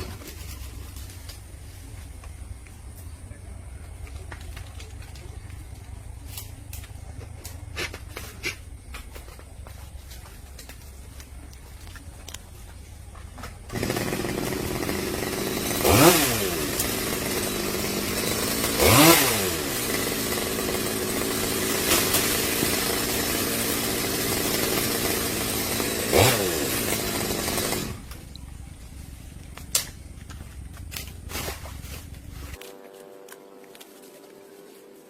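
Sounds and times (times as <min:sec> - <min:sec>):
chainsaw engine revving: 0:13.7 - 0:28.4.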